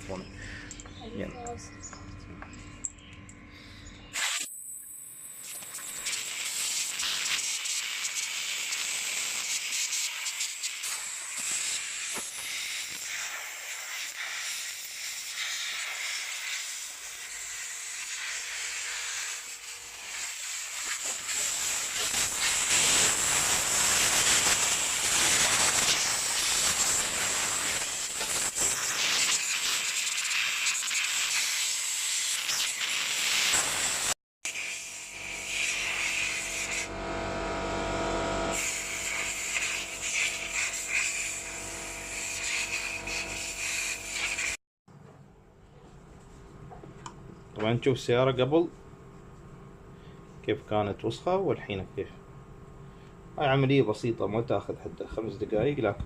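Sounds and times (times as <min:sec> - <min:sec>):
compressed air hissing: 0:04.1 - 0:36.9, 0:38.5 - 0:44.6.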